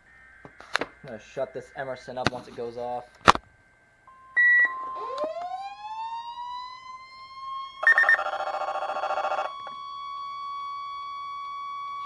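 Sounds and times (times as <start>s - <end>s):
pulsing multi-tone alarm: 4.1s - 12.0s
siren-like alarm winding up: 4.1s - 12.0s.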